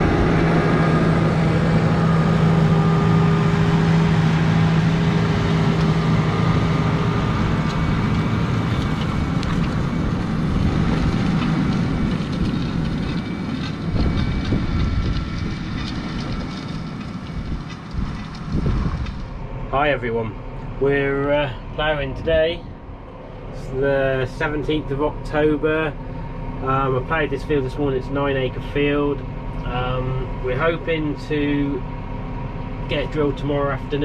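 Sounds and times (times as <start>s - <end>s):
tractor diesel engine humming: 0.0s - 34.0s.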